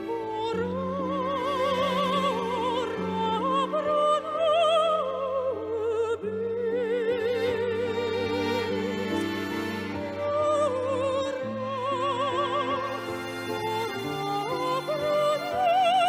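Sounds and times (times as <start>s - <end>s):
opera-style singing: 0.0s - 16.0s.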